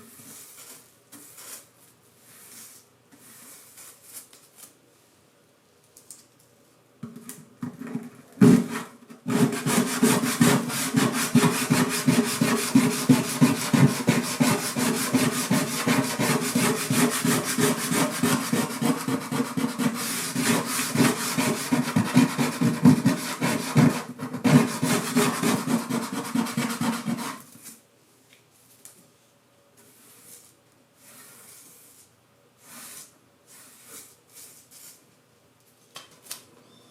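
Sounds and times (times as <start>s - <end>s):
tool scraping wood: 7.9s - 27.5s.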